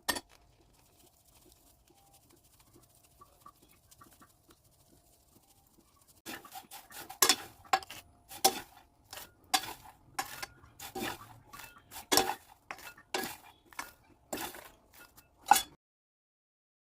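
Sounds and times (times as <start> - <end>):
spoon knocking in metal pan: 7.0 - 15.8.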